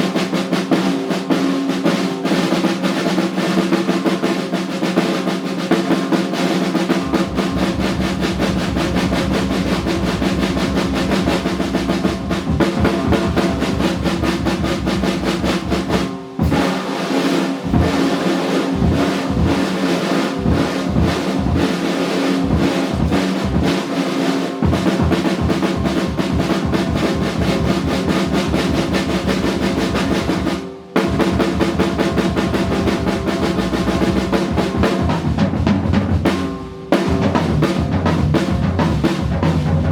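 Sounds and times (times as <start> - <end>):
snare drum rolls: 0.0 - 39.9
bass drum hits: 7.0 - 16.6.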